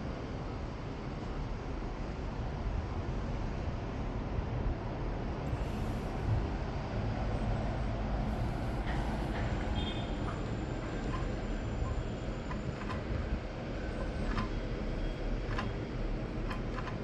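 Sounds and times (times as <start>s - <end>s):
sewing machine clattering: 8.3s - 17.0s.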